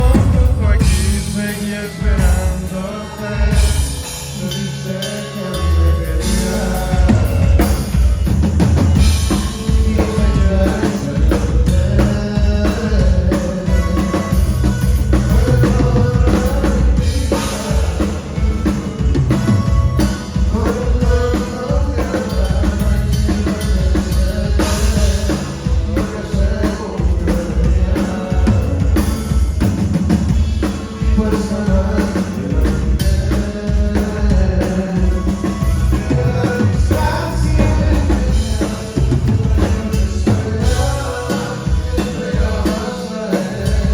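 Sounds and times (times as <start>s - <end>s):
band playing a song: 0.0s - 43.9s.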